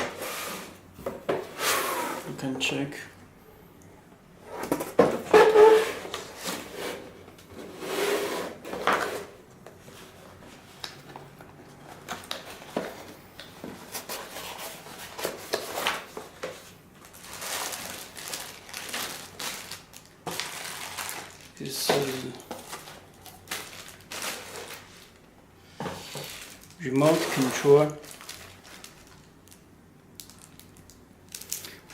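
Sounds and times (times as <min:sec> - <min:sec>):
cardboard packaging rustling: 0:04.5 - 0:29.6.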